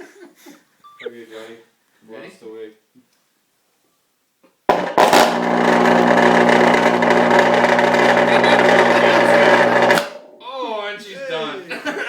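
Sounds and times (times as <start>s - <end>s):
speaker pop: 4.7s - 10.3s
subwoofer buzzing loudly: 4.7s - 10.4s.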